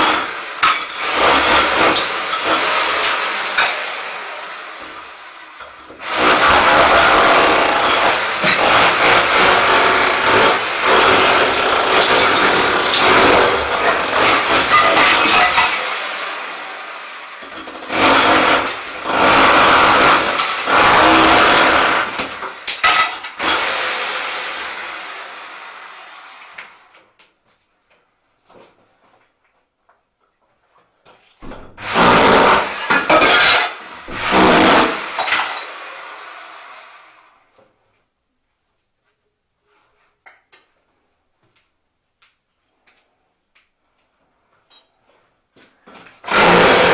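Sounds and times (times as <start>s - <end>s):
rotary hammer chiselling tiles: 0.0s - 4.0s, 5.9s - 16.0s, 17.4s - 23.8s, 31.4s - 35.6s, 45.9s - 46.9s
broken tile clattering: 0.0s - 4.1s, 6.2s - 16.1s, 17.6s - 23.6s, 31.1s - 35.8s
clicks of falling shards: 0.2s - 4.1s, 8.4s - 9.4s, 11.3s - 16.1s, 17.4s - 21.0s, 21.7s - 23.4s, 31.1s - 35.8s.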